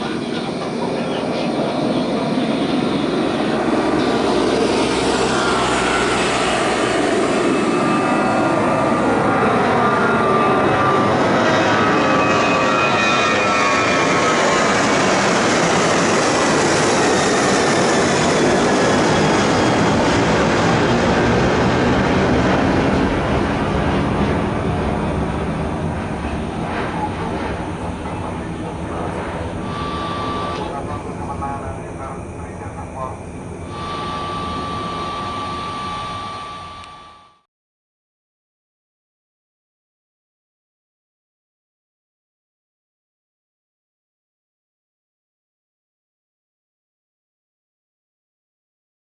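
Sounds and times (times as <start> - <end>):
jet airliner taking off: 0.0 - 37.1
jet engine whine falling in pitch: 0.0 - 37.4.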